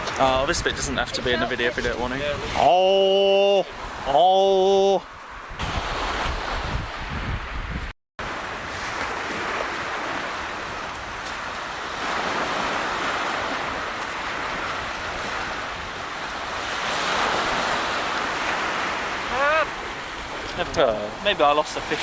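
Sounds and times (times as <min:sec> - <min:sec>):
wind buffeting microphone: 0:00.0 - 0:02.6, 0:05.1 - 0:20.9
sea waves washing onto beach: 0:08.2 - 0:22.0.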